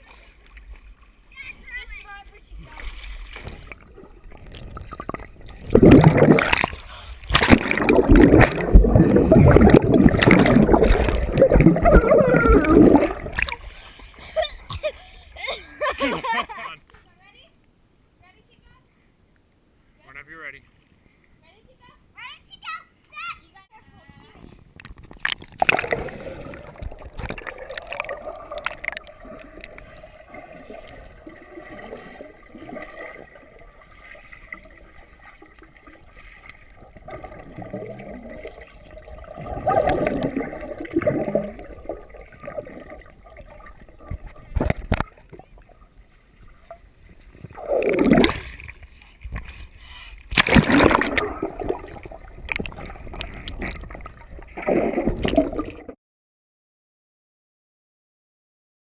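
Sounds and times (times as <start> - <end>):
water sloshing and splashing: 0.0 - 15.1, 24.6 - 56.0.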